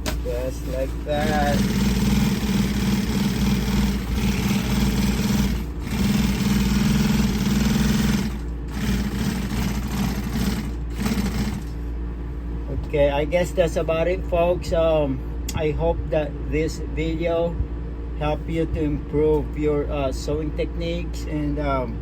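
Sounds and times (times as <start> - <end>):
sewing machine stitching: 1.1 - 11.8.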